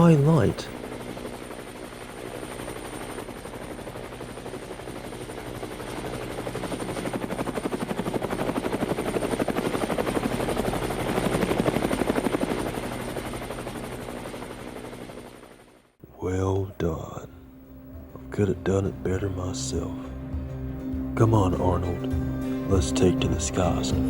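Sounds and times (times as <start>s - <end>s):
helicopter rotor chopping: 0.0s - 15.6s.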